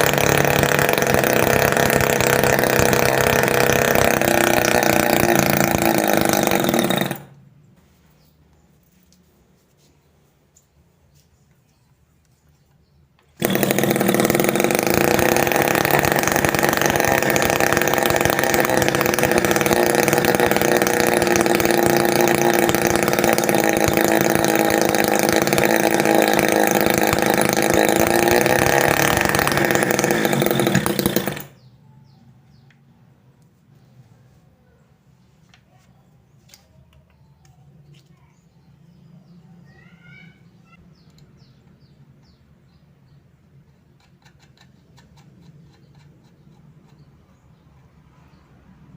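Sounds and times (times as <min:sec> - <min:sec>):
small two-stroke engine running: 0:00.0 - 0:07.4, 0:13.3 - 0:31.7, 0:44.0 - 0:47.2.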